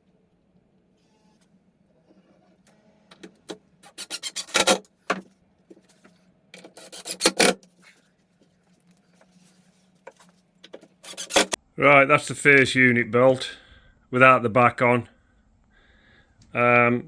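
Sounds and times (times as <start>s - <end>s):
rubbing and scraping on plywood: 3.9s - 4.8s, 5.7s - 8.0s, 9.2s - 11.6s.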